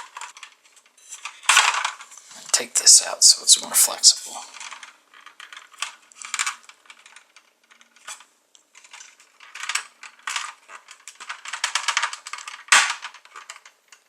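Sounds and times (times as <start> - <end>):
plastic toy parts clicking: 4.6 - 14.0.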